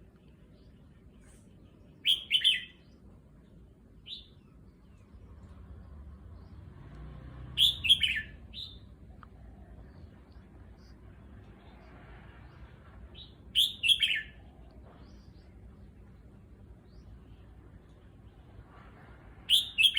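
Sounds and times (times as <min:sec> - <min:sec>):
bird warbling song: 0:02.0 - 0:03.0, 0:07.6 - 0:09.2, 0:13.2 - 0:15.6.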